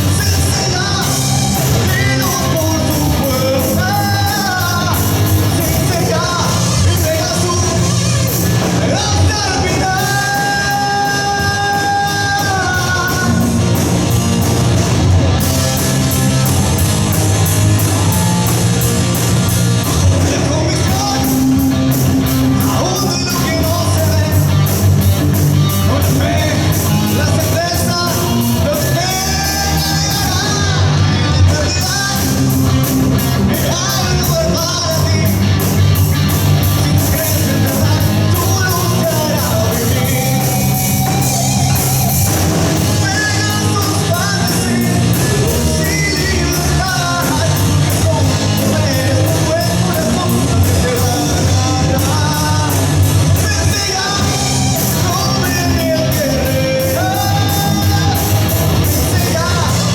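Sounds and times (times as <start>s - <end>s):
man singing: 0.0s - 14.8s, 15.4s - 59.9s
live rock band: 0.0s - 59.9s.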